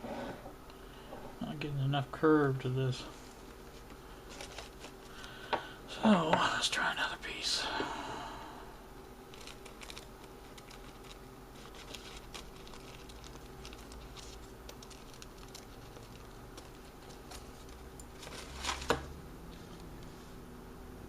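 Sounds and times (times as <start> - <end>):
paper rustling: 3.2 - 5.3, 9.3 - 19.8.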